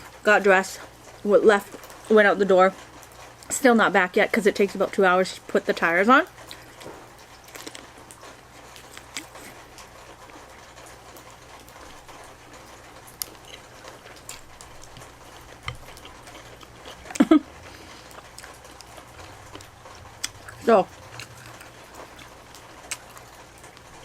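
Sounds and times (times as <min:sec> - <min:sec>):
eating mouth noises: 0:06.4 - 0:09.8, 0:13.0 - 0:24.0.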